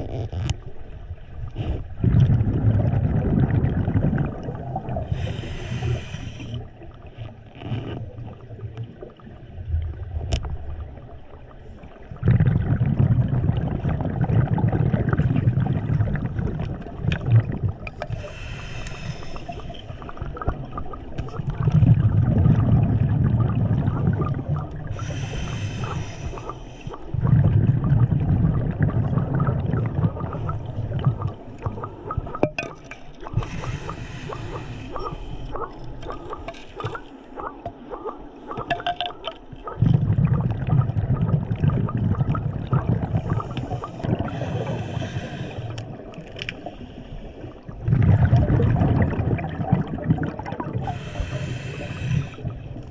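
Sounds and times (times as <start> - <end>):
bubbling exhale underwater: 1.5 - 6.9, 8.3 - 37.1, 38.5 - 52.9
regulator inhale hiss: 5.1 - 6.8, 18.1 - 20.1, 24.9 - 27.1, 33.4 - 35.5, 43.1 - 45.9, 46.6 - 47.6, 50.8 - 52.7.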